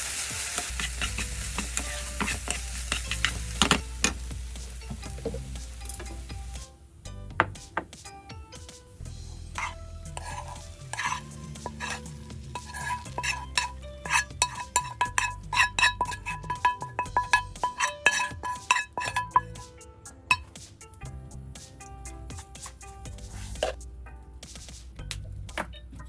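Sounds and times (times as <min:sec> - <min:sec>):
light sizzling: 0:00.0 - 0:23.9
utensil scraping metal pan: 0:00.7 - 0:04.2, 0:09.3 - 0:19.7, 0:20.3 - 0:20.6, 0:22.4 - 0:23.8.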